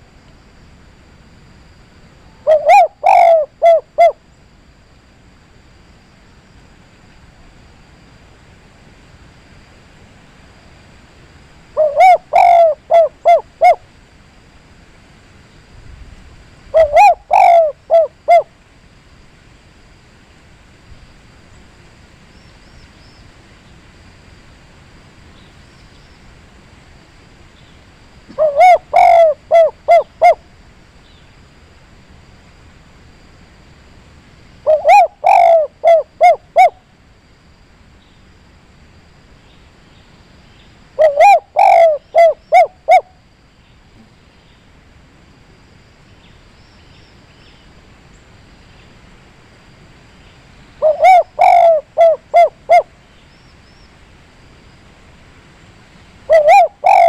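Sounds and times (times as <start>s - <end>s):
dove cooing: 2.4s - 4.2s, 11.8s - 13.8s, 16.7s - 18.5s, 28.3s - 30.4s, 34.6s - 36.8s, 41.0s - 43.1s, 50.8s - 52.9s, 56.3s - 57.0s.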